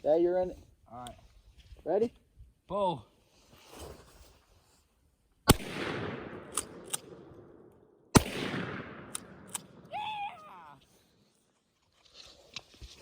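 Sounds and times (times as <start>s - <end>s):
shotgun blasts echoing: 5.5s - 9.9s.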